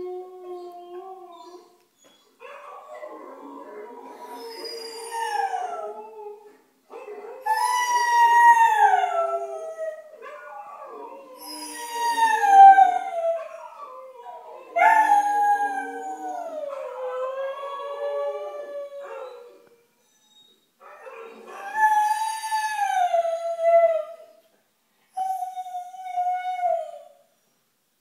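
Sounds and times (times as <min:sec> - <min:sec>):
recorded dog howling from video: 0:00.0 - 0:24.4, 0:25.1 - 0:27.4
husky howling: 0:02.4 - 0:19.7.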